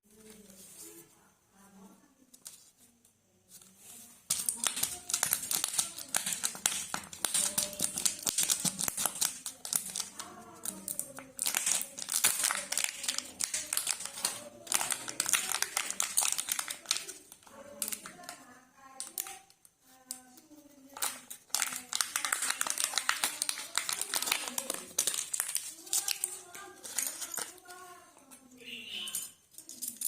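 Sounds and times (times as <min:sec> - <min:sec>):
foil wrappers crinkling: 0:04.3 - 0:18.4, 0:20.9 - 0:28.0.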